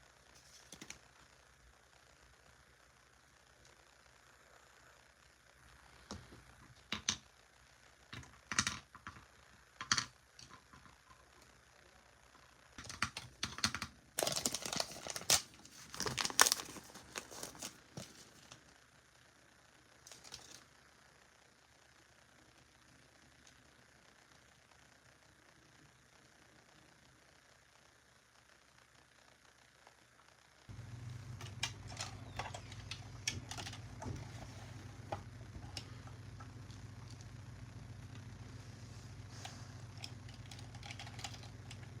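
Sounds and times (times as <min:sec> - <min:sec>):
steady low hum: 0:00.0 - 0:42.0
plastic wrapping crinkling and tearing: 0:14.2 - 0:18.6.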